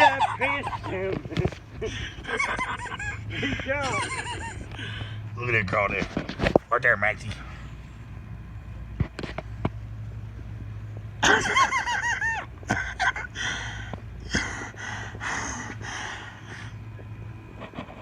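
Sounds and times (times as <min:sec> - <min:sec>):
low engine hum: 0:00.0 - 0:18.0.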